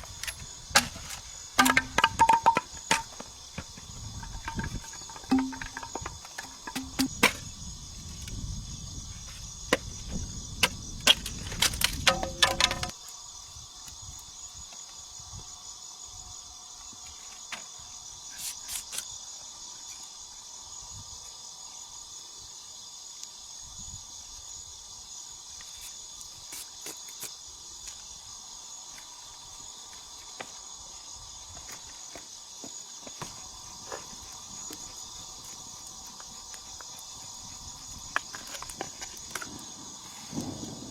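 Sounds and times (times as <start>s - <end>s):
forest insects buzzing: 0.0s - 40.9s
sharp knocks: 1.6s - 3.2s, 4.2s - 7.4s, 12.1s - 12.9s.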